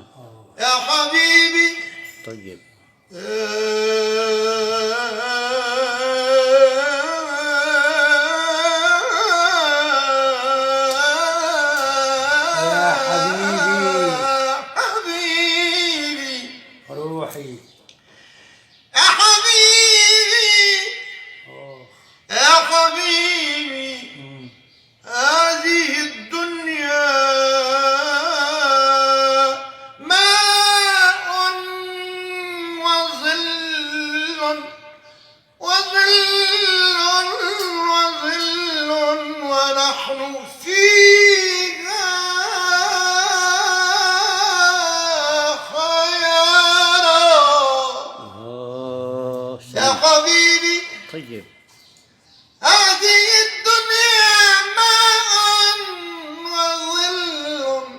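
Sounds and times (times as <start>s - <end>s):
person singing ornamented notes: 0.0s - 16.6s, 35.7s - 51.9s.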